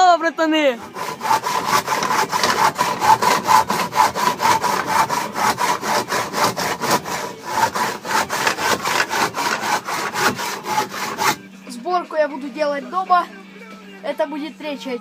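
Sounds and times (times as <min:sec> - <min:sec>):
hand saw cutting wood: 0:00.8 - 0:11.4.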